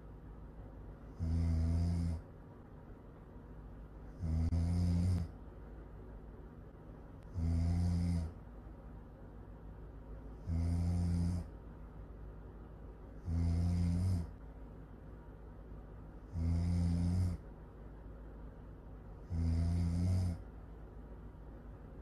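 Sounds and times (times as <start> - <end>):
faint steady hiss: 0.0 - 22.0
loud snoring: 1.1 - 2.2, 4.1 - 5.3, 7.3 - 8.4, 10.4 - 11.5, 13.2 - 14.4, 16.2 - 17.4, 19.2 - 20.4.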